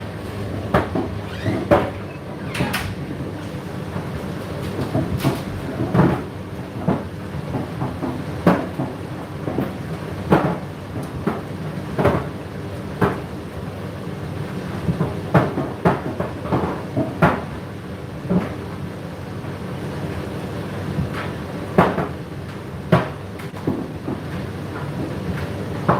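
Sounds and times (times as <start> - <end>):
laundry machine hum: 0.0 - 25.9
clothes thudding in washing drum: 0.6 - 13.3.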